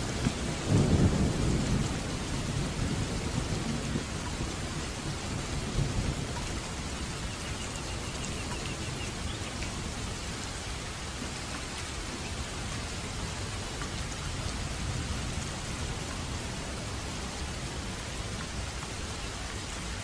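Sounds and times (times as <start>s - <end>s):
low rumble of thunder: 0.0s - 20.0s
rain falling: 0.0s - 20.0s.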